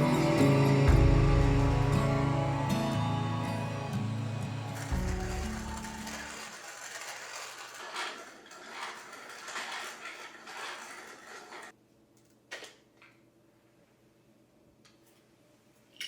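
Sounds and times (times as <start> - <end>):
scraping rasping sound: 0.0 - 11.7.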